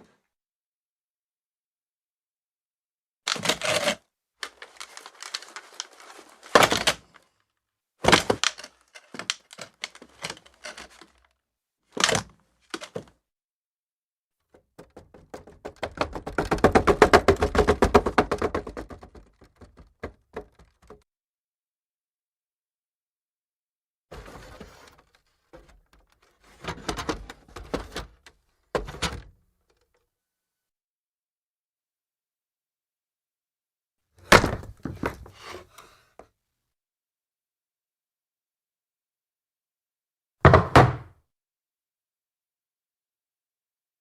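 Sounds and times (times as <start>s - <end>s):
wooden chair knocking and scraping: 40.5s - 41.1s.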